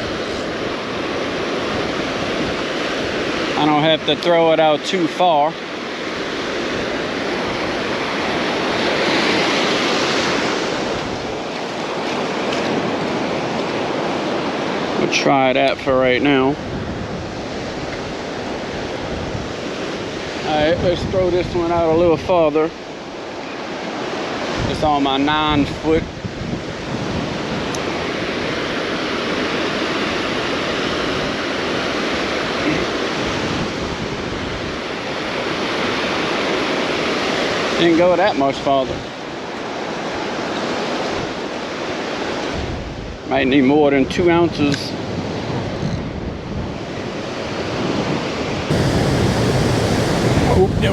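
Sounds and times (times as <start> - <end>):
surf breaking and washing ashore: 0.0 - 43.3, 46.5 - 50.9
wind on microphone: 16.6 - 22.3, 24.6 - 28.5, 44.9 - 50.9
wind buffeting microphone: 26.0 - 27.7, 47.7 - 50.9
surf breaking on beach: 48.7 - 50.9.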